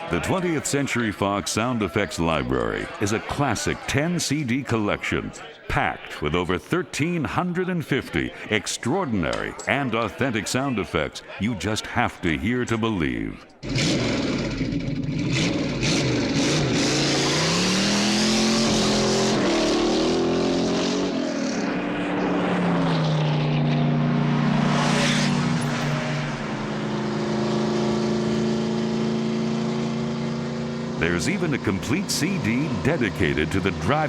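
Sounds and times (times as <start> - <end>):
car engine revving: 13.6 - 34.0.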